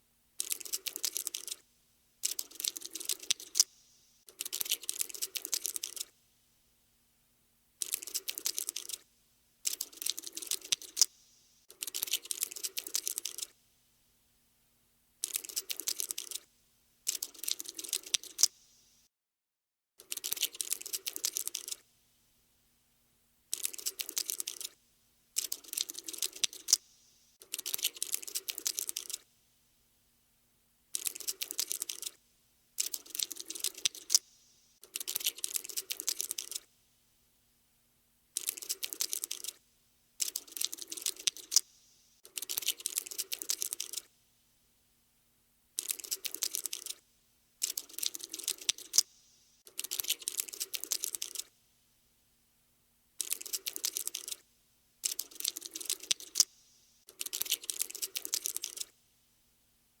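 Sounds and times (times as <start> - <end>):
rapid dry scuttling clicks: 2.2 - 3.7, 4.4 - 6.1, 7.8 - 9.0, 9.7 - 11.1, 23.5 - 24.8, 25.4 - 26.8, 27.4 - 29.2, 31.0 - 32.2, 32.8 - 34.2, 34.8 - 36.7, 38.4 - 39.6, 40.2 - 41.6, 42.2 - 44.1, 45.8 - 47.0, 47.6 - 49.1, 49.7 - 51.5, 53.2 - 54.4, 55.0 - 56.5, 57.1 - 58.9.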